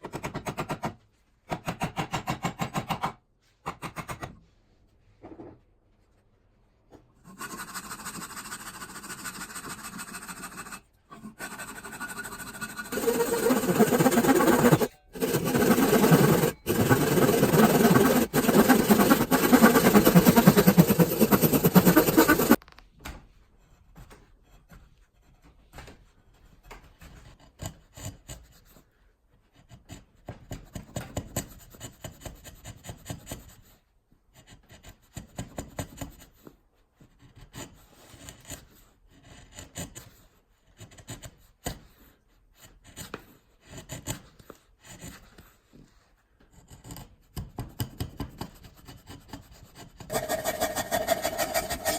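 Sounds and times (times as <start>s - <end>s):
tool scraping wooden handle: 7.2s - 22.6s, 46.4s - 51.9s.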